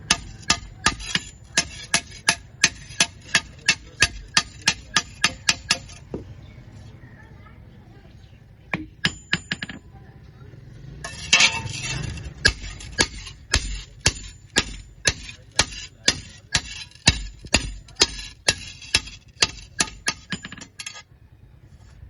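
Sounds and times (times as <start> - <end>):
hammer striking iron: 0.0 - 6.4, 8.7 - 9.9, 11.0 - 21.0.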